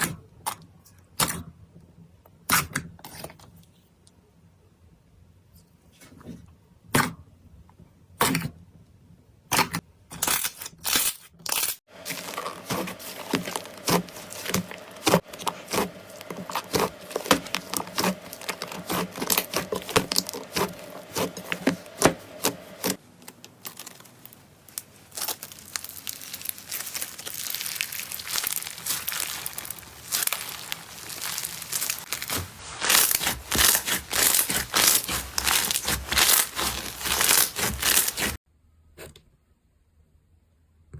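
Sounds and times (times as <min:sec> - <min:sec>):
slime crackling and popping: 0:12.0 - 0:38.4.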